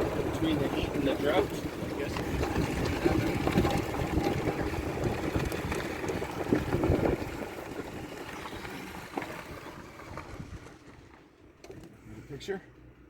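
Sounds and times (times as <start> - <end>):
car tyres crunching on gravel: 0.0 - 11.6.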